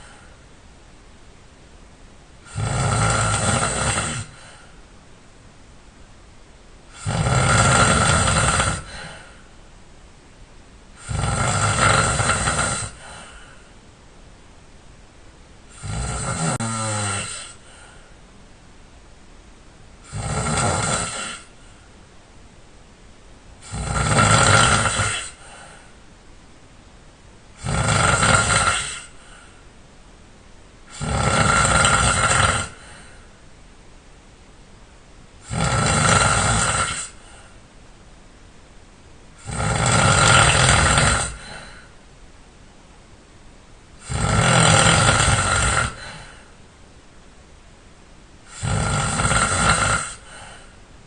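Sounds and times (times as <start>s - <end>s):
man snoring loudly: 2.5s - 4.6s, 6.9s - 9.2s, 11.0s - 13.4s, 15.7s - 17.7s, 20.0s - 21.6s, 23.6s - 25.6s, 27.6s - 29.4s, 30.9s - 33.1s, 35.4s - 37.3s, 39.4s - 41.9s, 44.0s - 46.4s, 48.5s - 50.5s.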